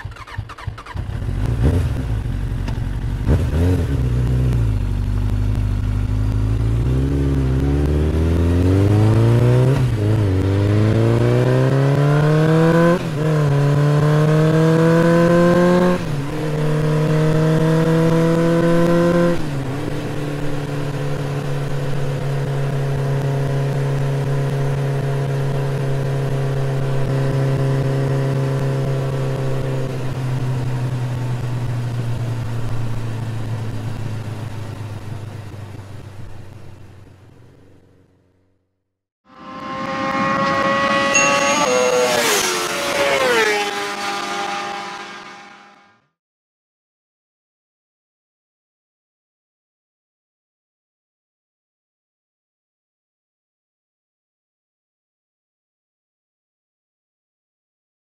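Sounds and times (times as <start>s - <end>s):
motorcycle engine revving and accelerating: 0.0s - 35.0s, 39.3s - 46.0s.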